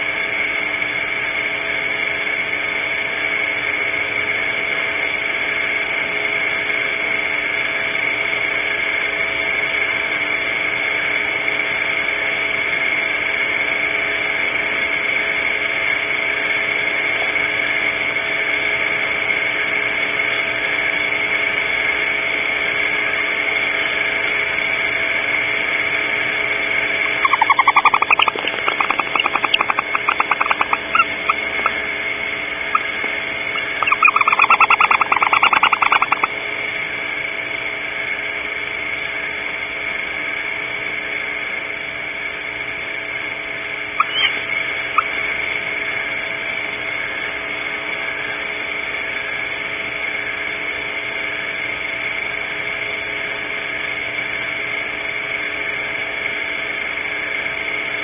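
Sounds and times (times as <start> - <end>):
electronic hiss and hum: 26.9 - 36.4
owl trilling: 27.0 - 36.4, 43.9 - 45.6.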